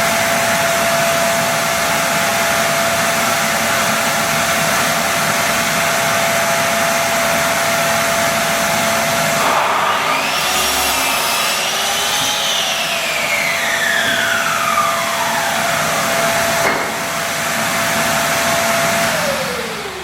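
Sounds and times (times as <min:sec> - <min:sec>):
power tool motor whine: 0:00.6 - 0:20.0
second motor spinning down: 0:07.1 - 0:20.0.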